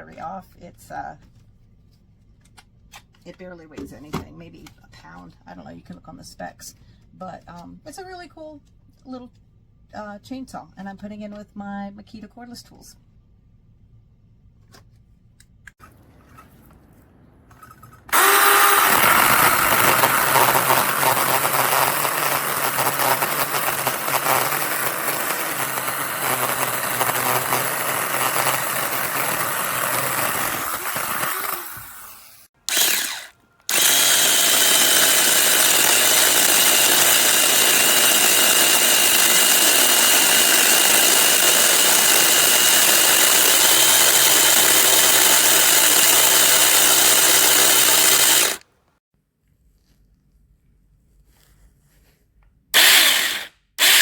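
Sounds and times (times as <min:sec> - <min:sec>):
electric chainsaw running: 0:18.1 - 0:48.6, 0:52.8 - 0:54.0.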